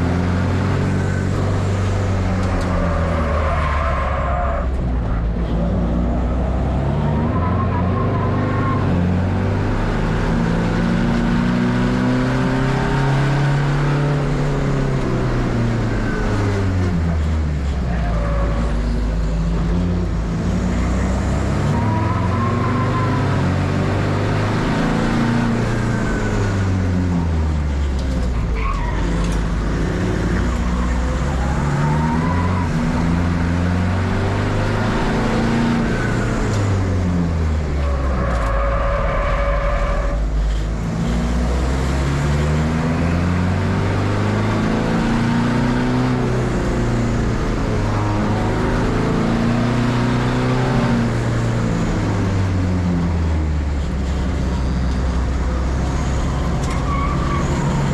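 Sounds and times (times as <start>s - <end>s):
race car engine revving: 0.0s - 57.9s
tyres squealing: 56.0s - 57.9s.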